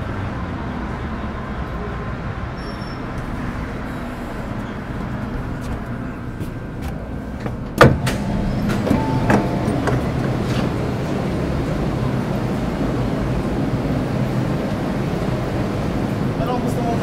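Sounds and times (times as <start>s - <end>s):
train interior rumble: 0.8s - 17.0s.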